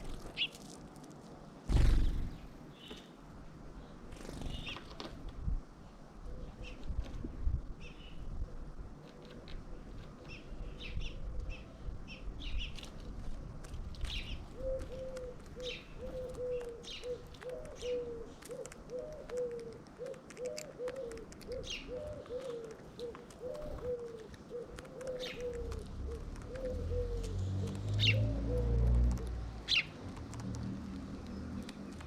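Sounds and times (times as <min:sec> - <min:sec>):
small birds chirping: 0:00.0 - 0:00.7, 0:01.7 - 0:03.2, 0:03.8 - 0:05.0, 0:09.1 - 0:13.1, 0:13.7 - 0:32.0
pigeon cooing: 0:14.5 - 0:29.8.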